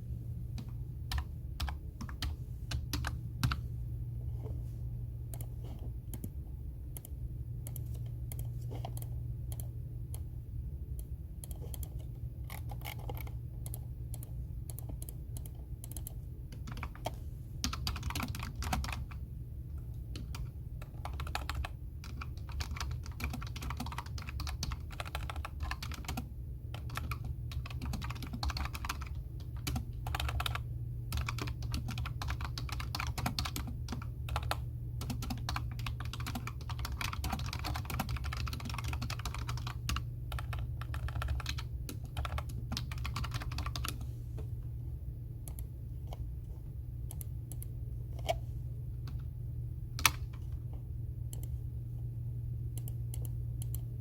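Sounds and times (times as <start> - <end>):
steady low hum: 0.0 - 54.0
keyboard typing clicks: 0.6 - 3.6, 5.3 - 5.5, 6.1 - 10.3, 10.9 - 19.0, 45.4 - 46.2, 47.0 - 48.4, 50.0 - 50.4, 51.3 - 51.6, 52.8 - 53.9.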